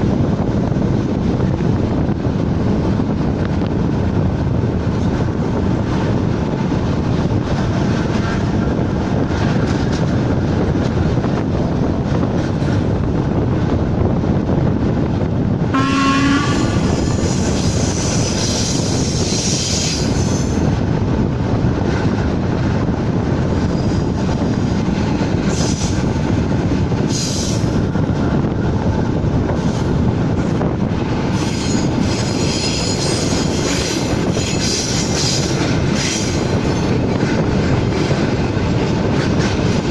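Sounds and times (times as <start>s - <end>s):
train running on track: 0.0s - 39.9s
train horn note: 15.7s - 17.2s.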